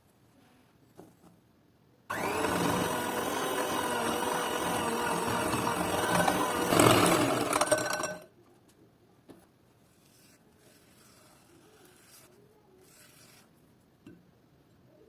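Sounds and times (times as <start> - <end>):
handling and rubbing: 0.0 - 1.5, 9.3 - 14.0
hand mixer motor running: 2.1 - 8.2.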